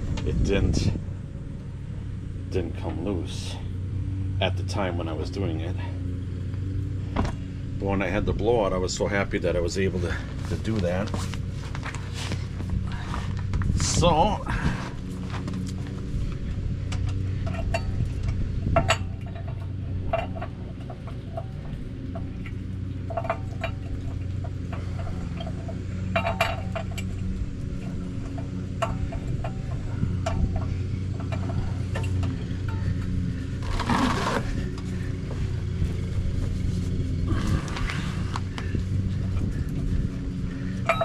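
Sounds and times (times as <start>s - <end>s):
steady low hum: 0.0s - 41.0s
scraping rustle: 9.8s - 41.0s
crank tool metal clinks: 40.6s - 41.0s.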